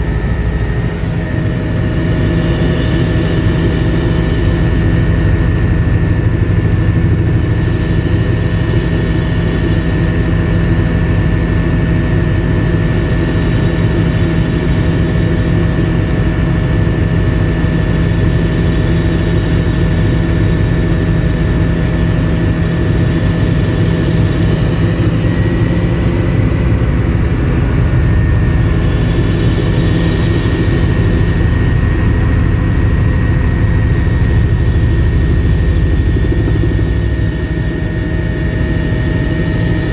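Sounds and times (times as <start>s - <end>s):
helicopter rotor and engine noise: 0.0s - 39.9s
whining tones: 20.3s - 39.9s.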